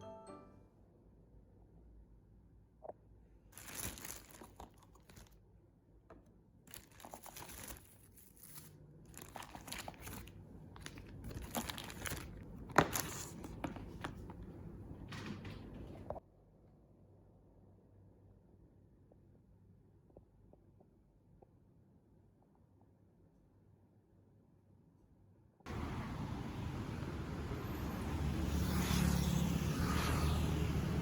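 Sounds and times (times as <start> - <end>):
rustling and crinkling: 3.5 - 5.4, 6.7 - 16.2.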